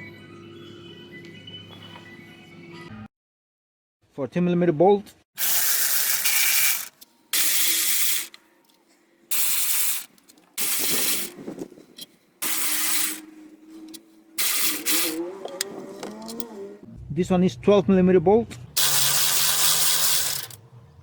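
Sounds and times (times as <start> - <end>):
pneumatic air ratchet: 5.4 - 8.4, 9.3 - 16.6, 18.8 - 20.6.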